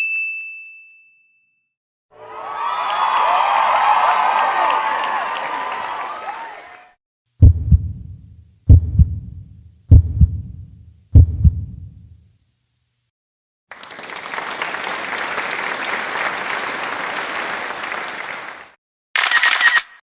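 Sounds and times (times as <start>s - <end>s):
crowd applause: 2.2s - 7.0s, 13.7s - 18.8s
heartbeat thud: 7.4s - 12.0s.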